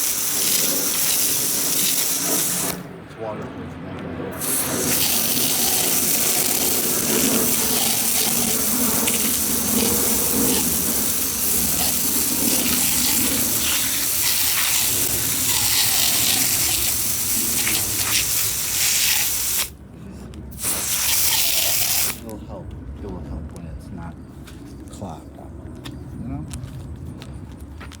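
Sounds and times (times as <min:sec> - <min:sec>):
water spraying on a pump: 0:00.0 - 0:02.8, 0:04.4 - 0:19.8, 0:20.5 - 0:22.2.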